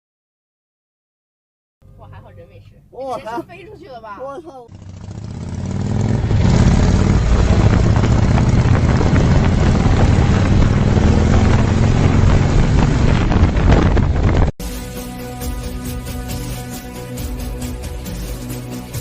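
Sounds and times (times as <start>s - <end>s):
vehicle rumbling: 1.8s - 14.5s
wind buffeting microphone: 6.2s - 14.5s.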